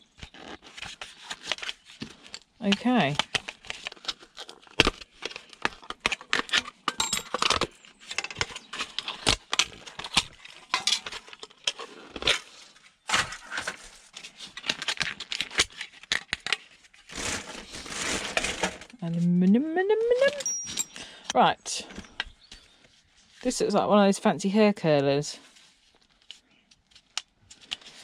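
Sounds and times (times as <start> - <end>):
metal and plastic parts clattering: 0.4 - 18.9, 20.3 - 21.3.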